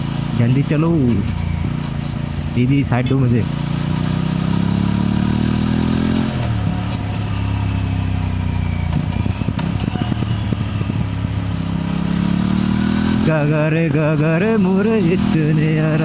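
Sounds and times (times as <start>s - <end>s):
motorcycle engine accelerating: 0.0s - 16.0s
exhaust pops and crackles: 8.8s - 11.2s.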